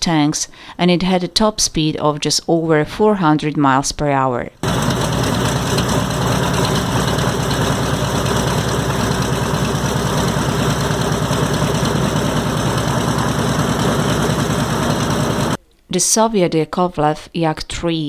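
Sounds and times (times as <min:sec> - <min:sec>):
radial aircraft engine running: 0:04.6 - 0:15.6.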